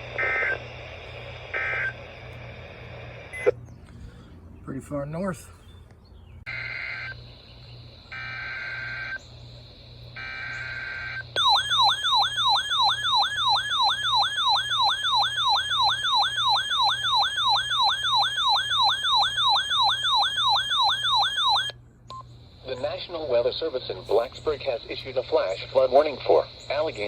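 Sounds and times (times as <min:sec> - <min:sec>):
warbling data tones: 0:00.0 - 0:03.6, 0:06.5 - 0:21.7
whooping siren-like tone: 0:08.1 - 0:09.2, 0:10.2 - 0:21.8.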